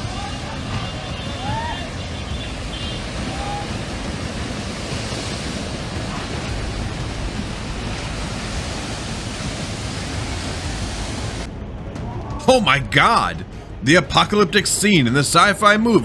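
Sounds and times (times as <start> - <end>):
rush of surging water: 0.0 - 11.5.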